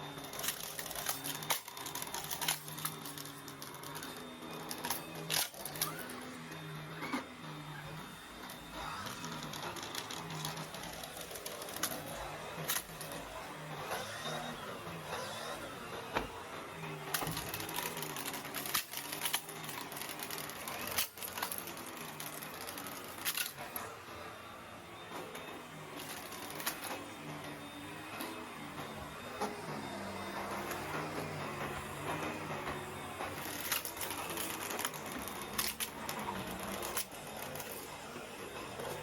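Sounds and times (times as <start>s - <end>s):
vacuum cleaner motor running: 0.0s - 39.0s.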